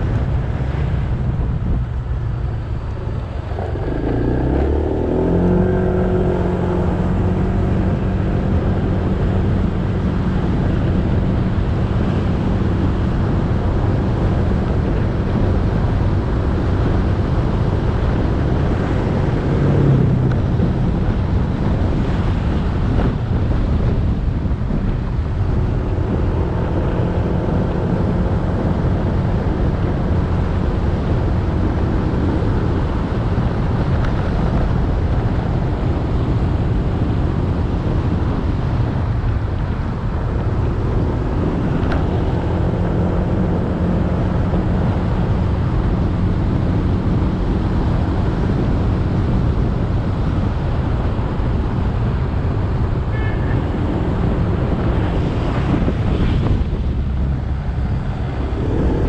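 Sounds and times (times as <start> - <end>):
wind rumble on microphone: 0.0 - 59.0.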